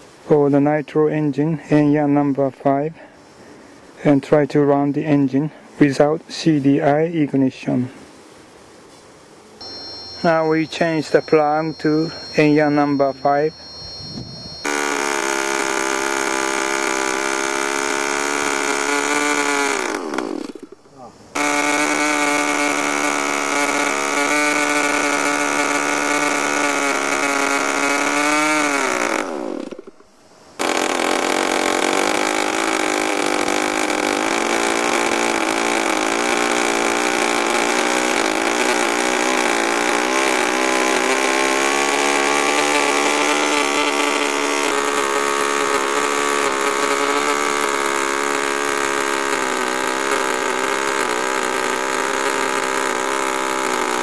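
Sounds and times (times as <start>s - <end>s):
model engine running: 9.6s - 20.7s, 21.4s - 29.9s, 30.6s - 54.0s.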